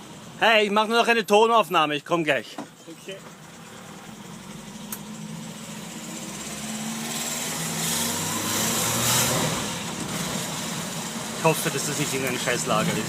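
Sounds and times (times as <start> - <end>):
strange engine noise: 0.0 - 13.0
car engine revving: 3.3 - 13.0.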